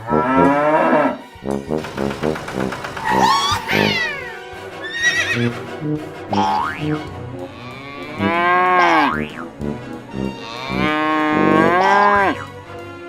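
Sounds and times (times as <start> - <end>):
cow mooing: 0.0 - 1.3, 7.4 - 9.4, 10.1 - 12.5
music with repeating notes: 0.0 - 13.0.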